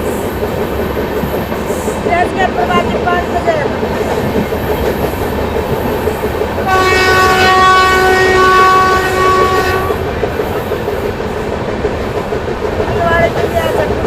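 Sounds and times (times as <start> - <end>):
train wheels clattering on rails: 0.0 - 14.0
locomotive horn blast: 6.7 - 10.1.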